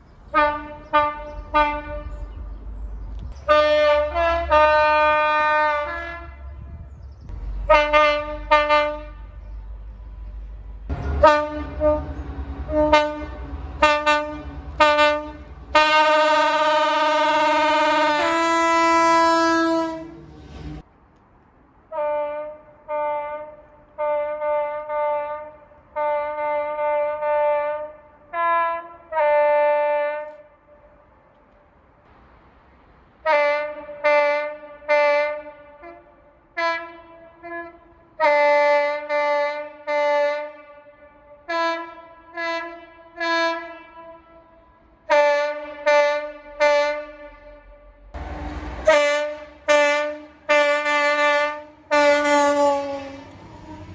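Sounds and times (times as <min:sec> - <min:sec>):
train air horn blasts: 0:00.3 - 0:02.5, 0:03.4 - 0:20.8, 0:21.9 - 0:31.2, 0:33.2 - 0:53.9
loud rush of noise: 0:48.2 - 0:50.5.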